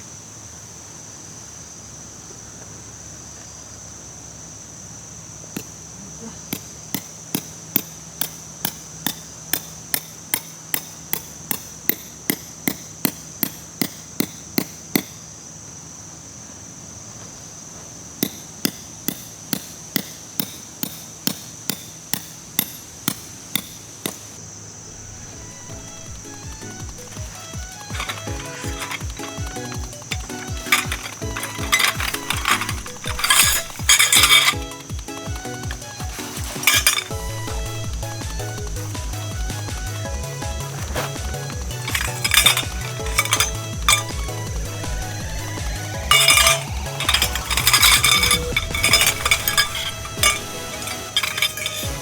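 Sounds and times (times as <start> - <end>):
hammer striking: 18.2 - 24.4, 25.6 - 39.8.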